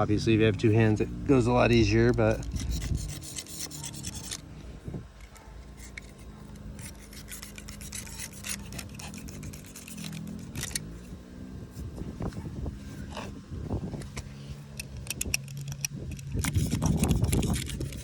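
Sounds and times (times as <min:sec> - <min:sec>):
razor blade scraping fiberglass: 0:00.6 - 0:04.5, 0:05.2 - 0:11.1, 0:14.0 - 0:18.0.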